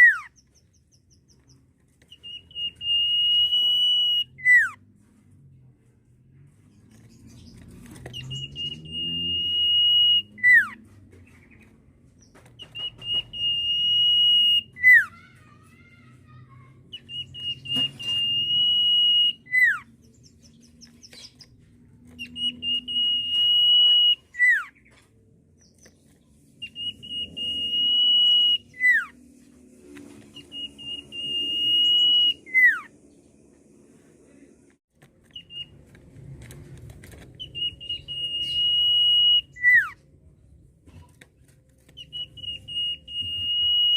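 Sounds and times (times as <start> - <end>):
bird whistling song: 0.0 - 4.8, 7.2 - 15.1, 16.9 - 21.5, 22.1 - 25.0, 25.6 - 29.3, 30.2 - 33.0, 35.3 - 35.8, 37.4 - 40.0, 41.9 - 43.9.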